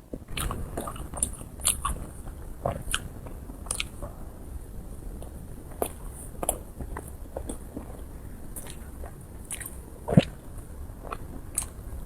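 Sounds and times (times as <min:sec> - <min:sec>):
close chewing mouth smacks: 0:03.7 - 0:04.0, 0:08.6 - 0:10.4, 0:11.1 - 0:11.8.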